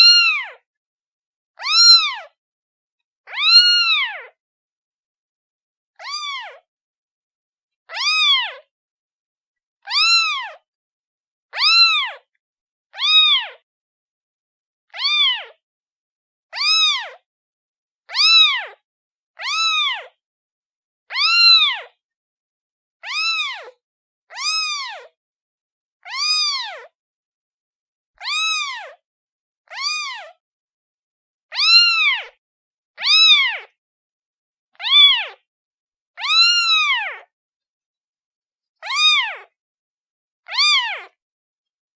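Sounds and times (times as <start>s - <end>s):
kitten meowing: 0.0s - 0.6s, 1.6s - 2.4s, 3.3s - 4.3s, 6.0s - 6.6s, 7.9s - 8.7s, 9.9s - 10.6s, 11.6s - 12.3s, 13.0s - 13.6s, 15.0s - 15.6s, 16.6s - 17.2s, 18.1s - 18.8s, 19.4s - 20.2s, 21.1s - 21.9s, 23.0s - 25.1s, 26.0s - 26.9s, 28.2s - 29.0s, 29.7s - 30.4s, 31.5s - 32.4s, 33.0s - 33.8s, 34.8s - 35.4s, 36.2s - 37.3s, 38.8s - 39.6s, 40.4s - 41.2s.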